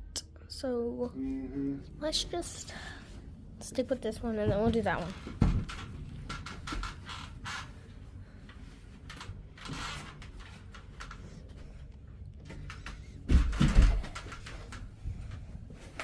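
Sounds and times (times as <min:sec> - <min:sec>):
heavy thumps and knocks on bed frame: 0:04.4 - 0:05.8, 0:13.2 - 0:16.0.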